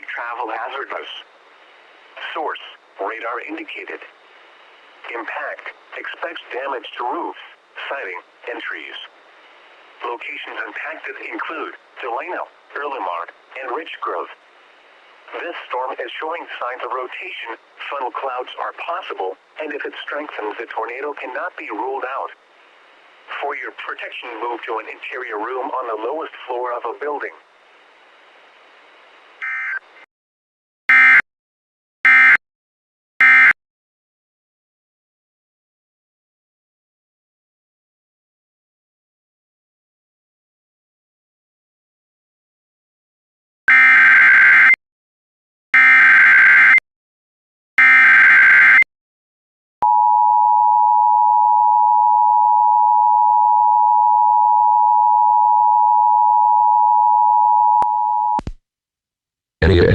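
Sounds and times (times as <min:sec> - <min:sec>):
faint radio hiss: 0:00.0 - 0:29.4.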